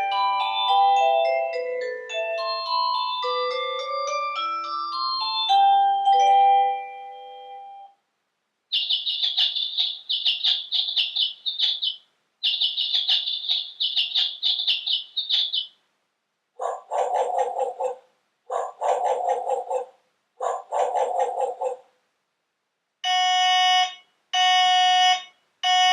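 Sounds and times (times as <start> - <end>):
descending bell-like chime melody: 0.0 - 7.9
electronic bird chirps: 2.6 - 3.6, 8.7 - 15.7.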